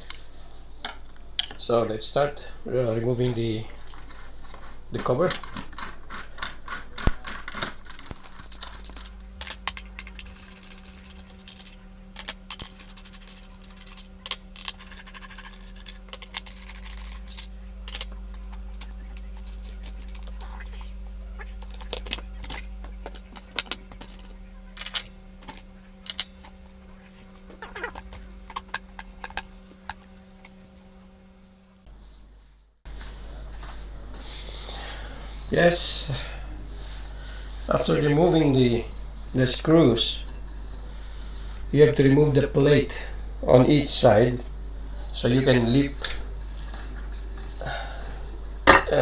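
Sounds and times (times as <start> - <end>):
low hum: 0.0 - 49.0
screwdriver and screws clinking: 8.1 - 20.8.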